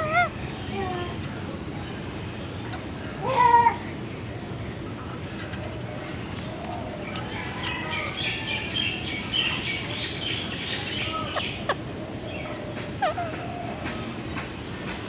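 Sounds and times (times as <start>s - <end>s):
steady background noise: 0.0s - 15.0s
parrot chirping: 13.0s - 13.4s.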